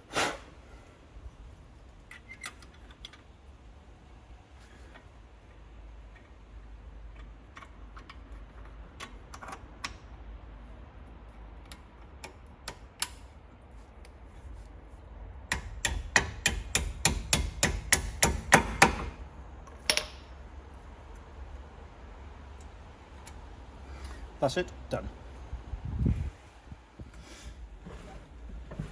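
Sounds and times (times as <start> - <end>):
metal hammer tapping metal: 15.5 - 19.2.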